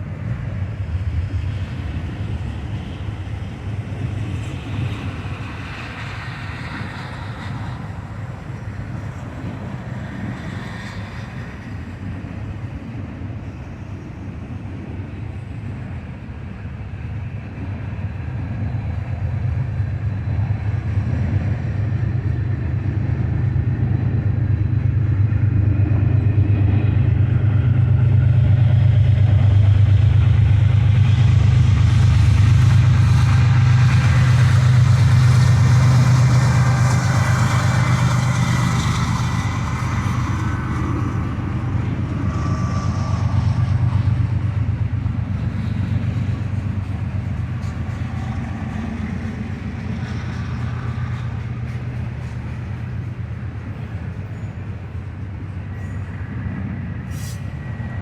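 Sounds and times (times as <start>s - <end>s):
vehicle engine rumble: 0.0s - 58.0s.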